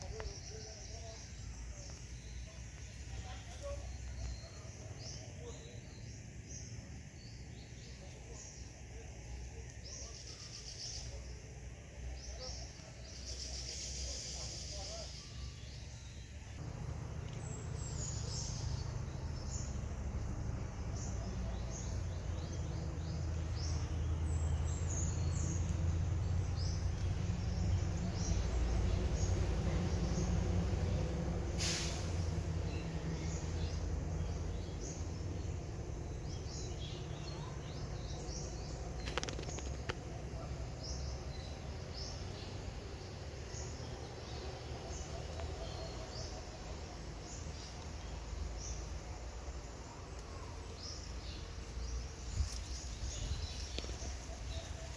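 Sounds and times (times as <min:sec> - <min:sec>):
low steady rumble: 0:16.1 - 0:45.0.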